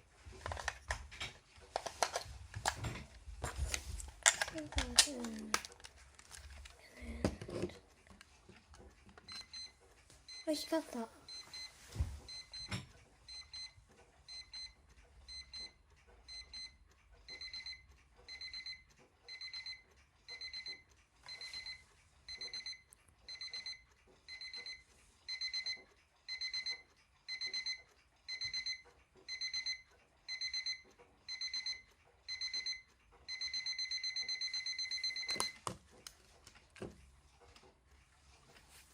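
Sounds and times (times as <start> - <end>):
alarm clock beeping: 9.3 - 35.7.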